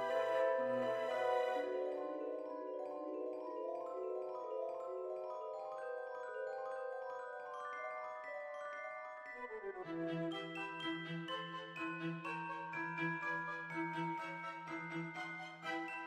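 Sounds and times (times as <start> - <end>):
mallet percussion melody: 10.5 - 16.0.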